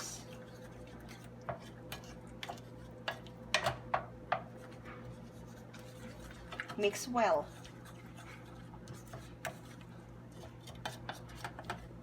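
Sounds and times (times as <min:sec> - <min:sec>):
utensil scraping a saucepan: 0:04.6 - 0:11.9.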